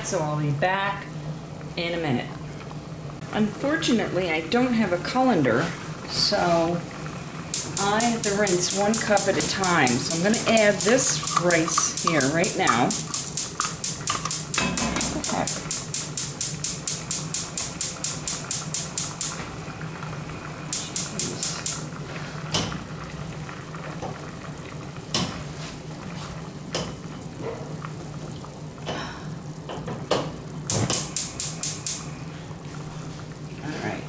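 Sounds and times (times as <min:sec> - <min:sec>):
kitchen utensils clinking: 0:07.6 - 0:15.8.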